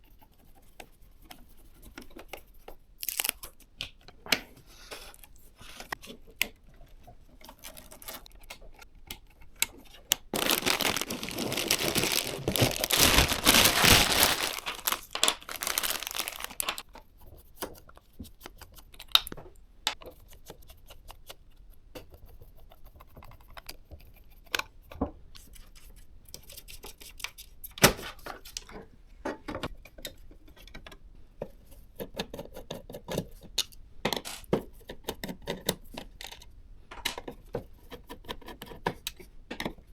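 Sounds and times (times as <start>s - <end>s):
packaging crinkling and tearing: 3.0s - 3.5s, 7.5s - 8.3s, 10.3s - 16.8s.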